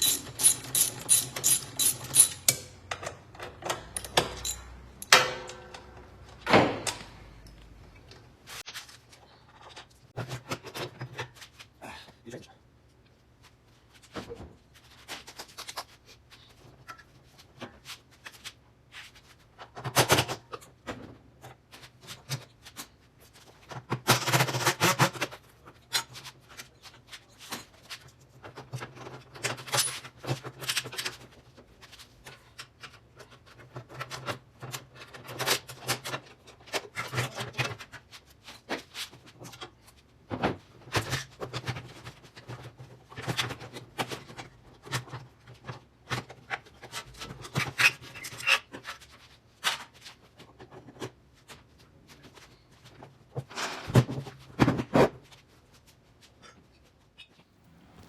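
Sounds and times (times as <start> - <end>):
hand tool clicks and metal clanks: 0.0 - 6.0.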